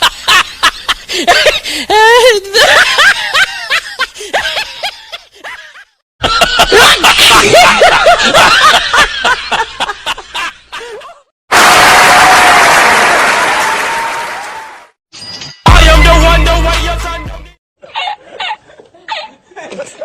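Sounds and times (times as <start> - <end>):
people laughing: 0.0 - 11.2, 17.8 - 20.0
loud applause: 11.5 - 15.0.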